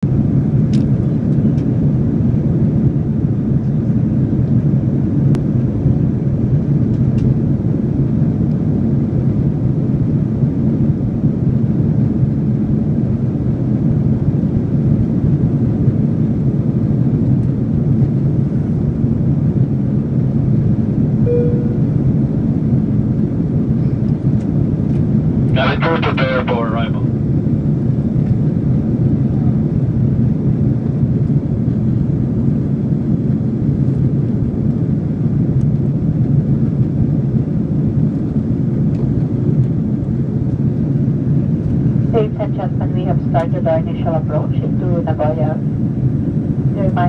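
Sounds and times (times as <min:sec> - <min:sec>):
jet airliner cabin drone: 0:00.0 - 0:47.0
cabin chime tone: 0:21.3 - 0:21.9.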